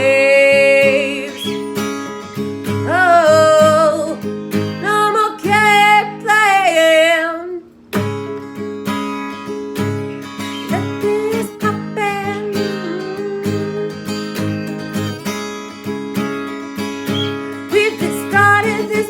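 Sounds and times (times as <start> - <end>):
person singing: 0.0 - 1.7, 2.9 - 4.2, 10.6 - 14.3, 17.7 - 19.0
strummed acoustic guitar: 0.0 - 19.0.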